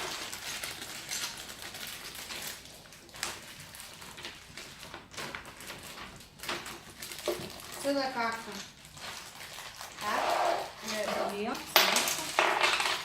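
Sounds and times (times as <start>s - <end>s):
paper rustling and crinkling: 0.0s - 12.4s.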